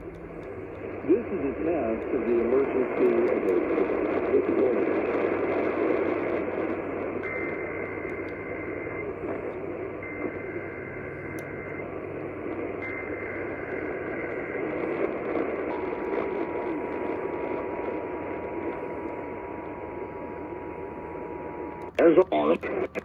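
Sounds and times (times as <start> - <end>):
radio hiss: 0.0 - 23.0
warbling digital data tones: 6.7 - 20.6.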